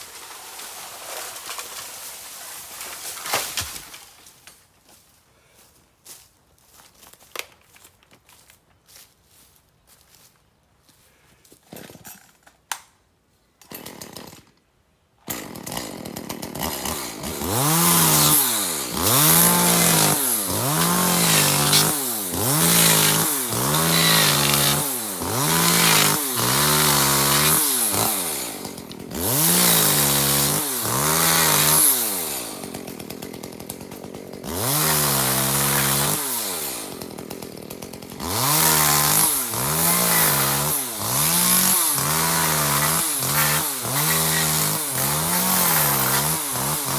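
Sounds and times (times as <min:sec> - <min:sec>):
chainsaw cutting bamboo: 0:00.0 - 0:04.6, 0:13.6 - 0:14.6, 0:15.2 - 0:46.9.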